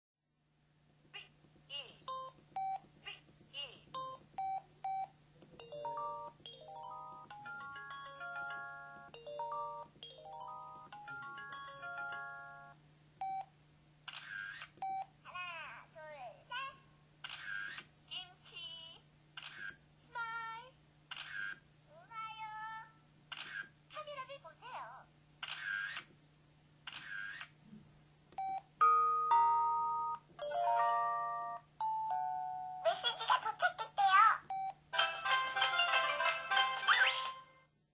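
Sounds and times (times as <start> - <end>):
phone electronic melody: 5.6 - 12.8, 28.8 - 32.8.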